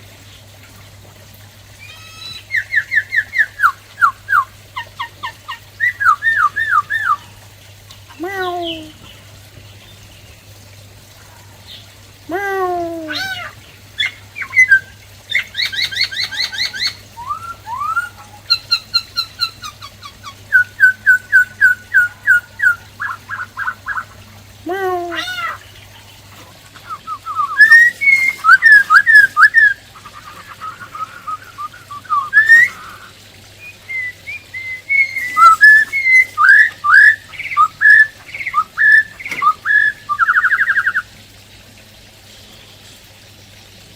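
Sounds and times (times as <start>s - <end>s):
bird singing whistled phrases: 1.8s - 4.5s, 5.8s - 7.2s, 14.0s - 19.6s, 20.5s - 24.1s, 26.8s - 29.8s, 30.5s - 41.1s.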